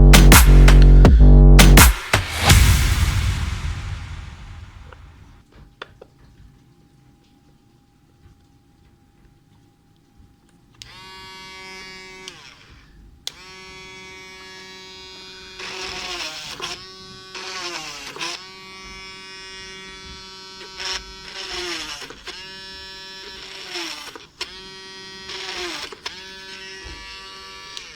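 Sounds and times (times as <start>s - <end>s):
small electric motor whining: 10.8s - 27.9s.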